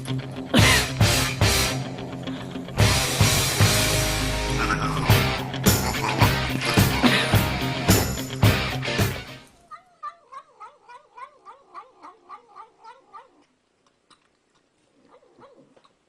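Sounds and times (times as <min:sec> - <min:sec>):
loud rock music: 0:00.0 - 0:09.5.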